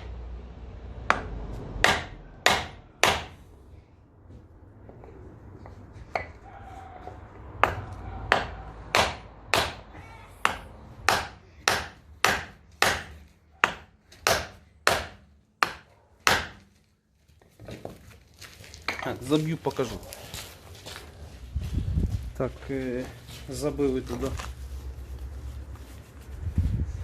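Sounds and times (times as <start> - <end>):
hammer striking metal bearing: 1.0 - 3.4, 7.6 - 9.8.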